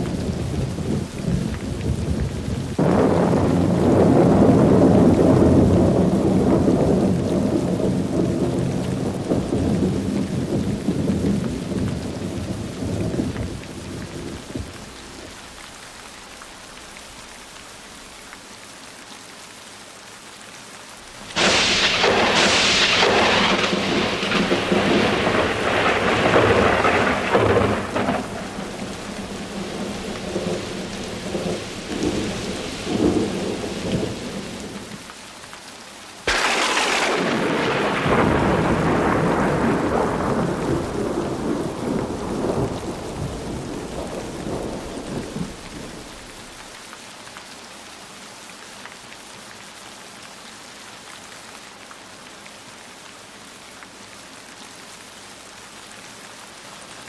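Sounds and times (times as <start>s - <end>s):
loud thunderclap: 0.0s - 15.0s, 21.3s - 35.0s, 36.3s - 46.6s
thunder rumbling: 0.0s - 15.5s, 21.2s - 35.0s, 36.3s - 46.6s
heavy rain: 0.0s - 57.0s.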